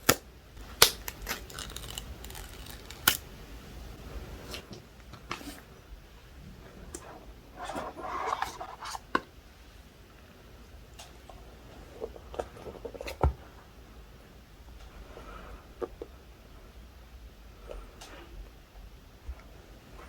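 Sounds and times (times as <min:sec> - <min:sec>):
packaging rustling: 0:00.6 - 0:03.3.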